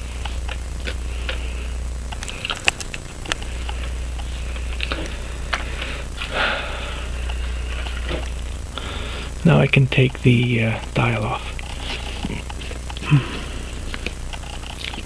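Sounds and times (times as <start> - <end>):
steady low hum: 0.0 - 15.0
person sniffing: 13.0 - 14.0.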